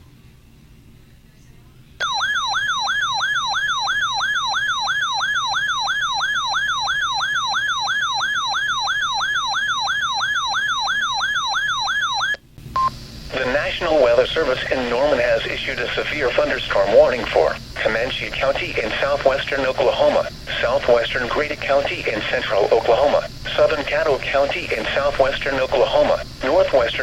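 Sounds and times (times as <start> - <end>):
warbling electronic alert tone: 2.0 - 12.4.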